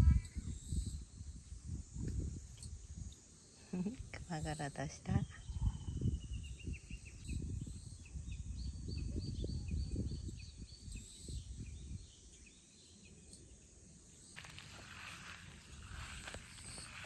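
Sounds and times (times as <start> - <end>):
wind rumble on microphone: 0.0 - 12.6.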